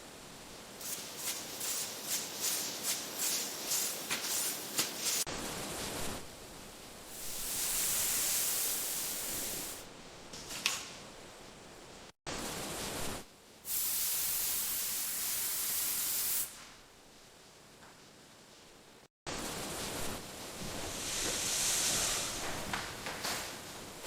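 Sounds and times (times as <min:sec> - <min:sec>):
sprayer hissing: 0:00.8 - 0:05.3, 0:07.2 - 0:09.8, 0:20.9 - 0:22.6.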